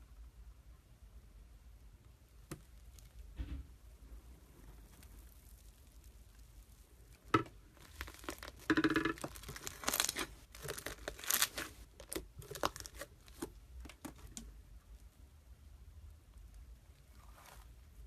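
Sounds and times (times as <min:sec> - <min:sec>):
slime crackling and popping: 0:04.7 - 0:14.5.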